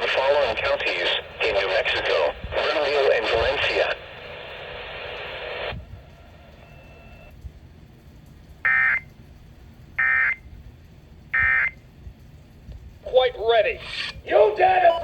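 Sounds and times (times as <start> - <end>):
digital data tone bursts: 13.8 - 15.0.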